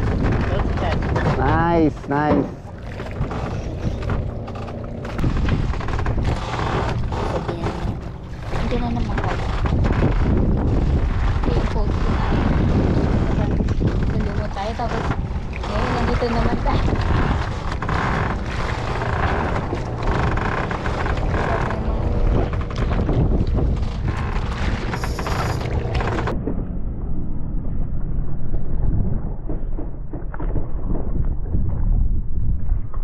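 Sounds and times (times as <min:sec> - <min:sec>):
wind buffeting microphone: 0:00.0 - 0:33.0.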